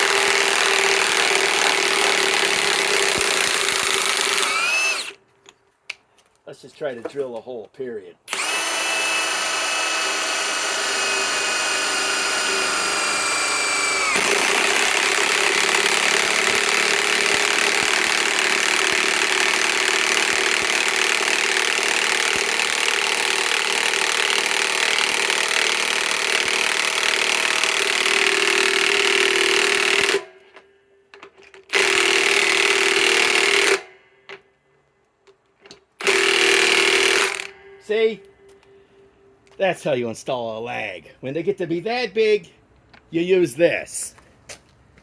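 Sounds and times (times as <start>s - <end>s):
cordless drill whining: 0.0s - 5.2s, 8.3s - 30.3s, 31.7s - 33.9s, 36.0s - 37.6s
impact wrench hammering screw into wood: 0.0s - 5.2s, 8.3s - 30.6s, 31.2s - 34.4s, 36.0s - 37.8s.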